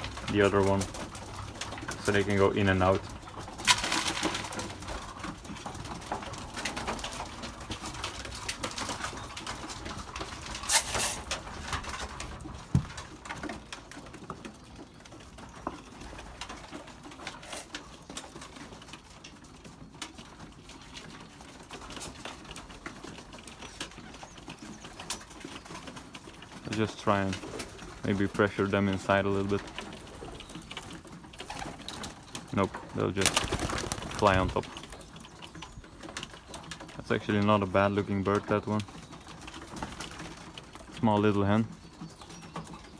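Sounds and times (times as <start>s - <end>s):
pigeons cooing: 0.0s - 42.9s.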